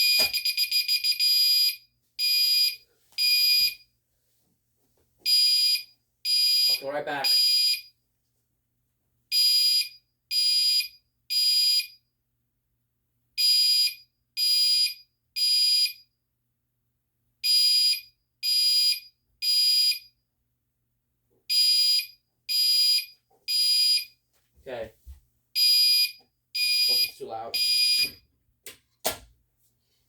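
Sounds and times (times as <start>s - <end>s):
fire alarm beeping: 0.0s - 3.8s, 5.3s - 7.9s, 9.3s - 12.0s, 13.4s - 16.1s, 17.4s - 20.2s, 21.5s - 24.1s, 25.6s - 28.2s.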